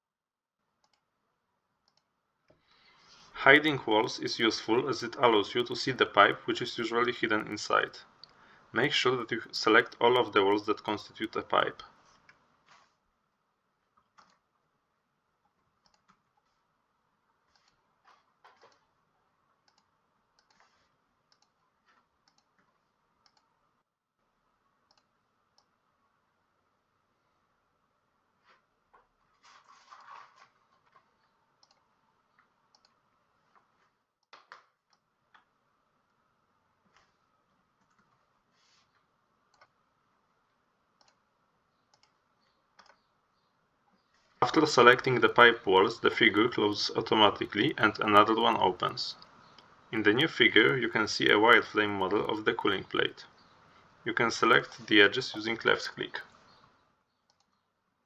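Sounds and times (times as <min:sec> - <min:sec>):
computer mouse clicks: 0:00.8 - 0:01.1, 0:01.8 - 0:02.6, 0:14.0 - 0:14.4, 0:15.8 - 0:16.4, 0:17.5 - 0:17.8, 0:19.6 - 0:23.5, 0:24.9 - 0:25.7, 0:31.6 - 0:33.0, 0:37.8 - 0:38.2, 0:39.5 - 0:39.8, 0:41.0 - 0:43.1, 0:56.5 - 0:57.6.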